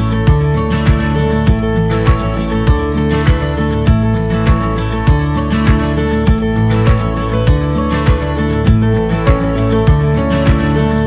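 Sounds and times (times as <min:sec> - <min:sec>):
country acoustic guitar music: 0:00.0 - 0:11.0.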